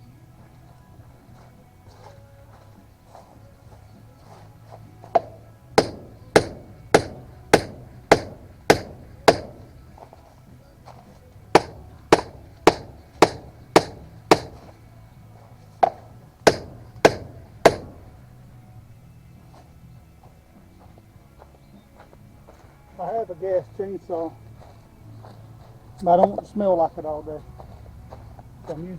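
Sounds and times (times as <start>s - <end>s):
sharp striking blows: 5.2s - 10.1s, 11.5s - 14.8s, 15.8s - 18.2s.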